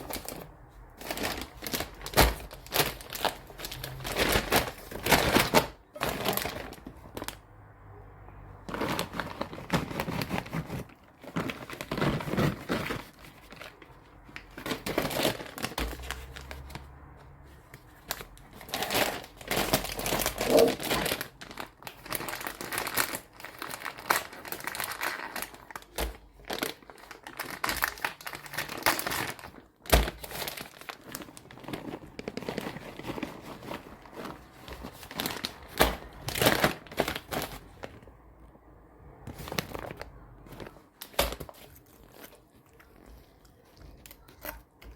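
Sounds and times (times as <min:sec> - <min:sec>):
foil crinkling and rustling: 0:00.0 - 0:07.4, 0:08.6 - 0:16.9, 0:17.5 - 0:38.1, 0:39.3 - 0:44.9.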